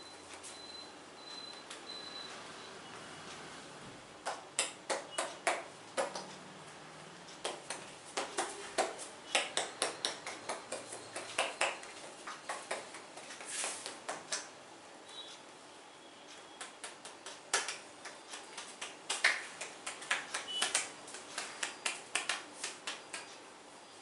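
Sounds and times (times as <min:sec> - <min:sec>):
hands slapping skin: 0:04.2 - 0:06.3, 0:07.4 - 0:14.5, 0:16.6 - 0:23.3.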